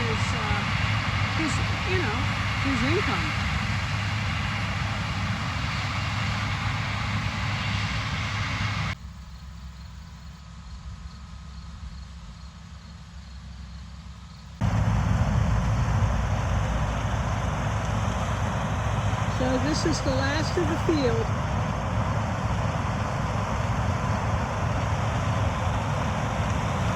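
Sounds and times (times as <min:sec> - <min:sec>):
harvester running: 0:00.0 - 0:09.0, 0:14.6 - 0:26.9.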